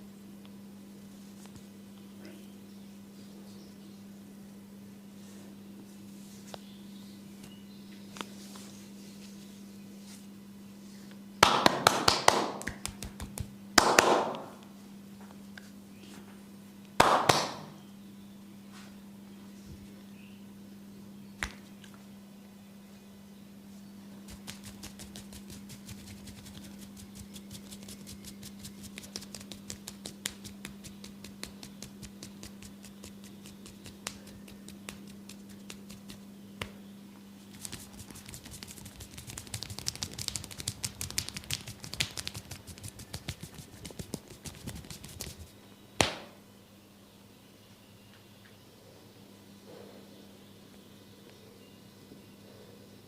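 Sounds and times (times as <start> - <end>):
sharp loud knock: 13.8 - 14.6.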